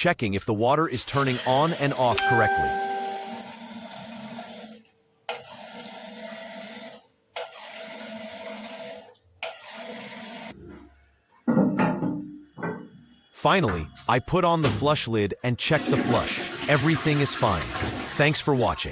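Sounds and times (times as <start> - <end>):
water rushing into toilet cistern: 0.9 - 4.7, 15.7 - 18.9.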